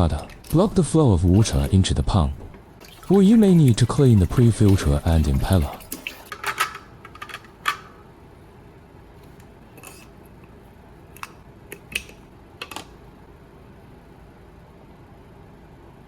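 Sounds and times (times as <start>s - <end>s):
pump parts clicking and knocking: 0.0s - 8.0s.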